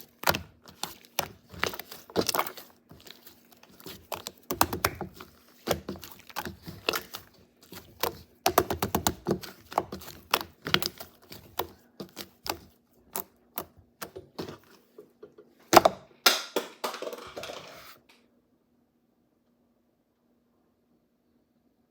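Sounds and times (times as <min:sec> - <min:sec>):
slime crackling stretch: 0:00.0 - 0:13.7.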